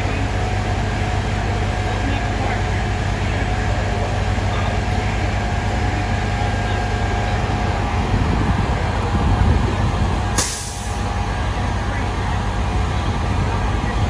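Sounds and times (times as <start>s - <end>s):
fire engines idling: 0.0s - 14.0s
traffic: 0.0s - 14.0s
wind buffeting microphone: 5.5s - 14.0s
short sharp hiss: 10.4s - 11.0s.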